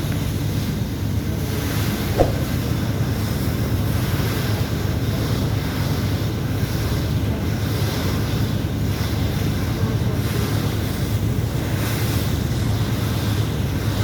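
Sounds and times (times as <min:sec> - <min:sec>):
wind buffeting microphone: 0:02.0 - 0:04.4.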